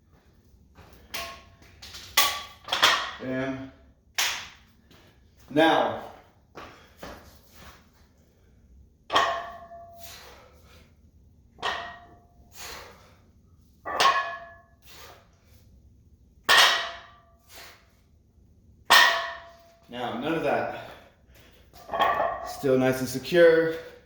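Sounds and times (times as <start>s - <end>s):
barbell ringing metal clank: 9.1s - 9.9s, 11.6s - 12.2s, 13.9s - 14.7s, 18.9s - 19.6s, 21.9s - 22.6s.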